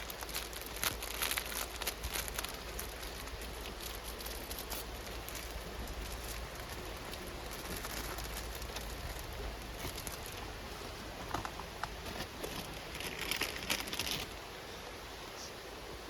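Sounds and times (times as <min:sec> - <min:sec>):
rain pattering: 0:00.0 - 0:14.4
rustle: 0:00.0 - 0:16.0.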